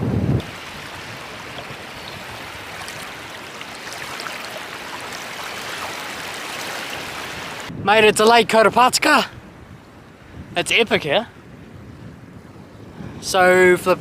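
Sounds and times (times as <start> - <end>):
rushing water: 0.0 - 7.7.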